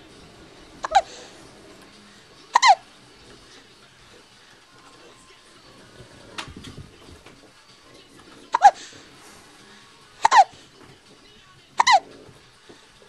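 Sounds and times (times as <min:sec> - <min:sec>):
baby hiccuping: 0:00.8 - 0:01.1, 0:02.5 - 0:02.8, 0:08.5 - 0:08.8, 0:10.2 - 0:10.6, 0:11.8 - 0:12.0.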